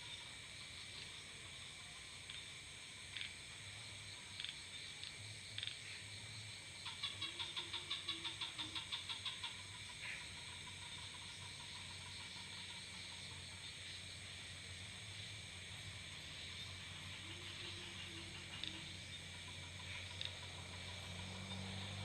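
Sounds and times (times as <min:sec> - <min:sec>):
insects chirring: 0:00.0 - 0:22.0
rapid pulsed animal call: 0:06.8 - 0:22.0.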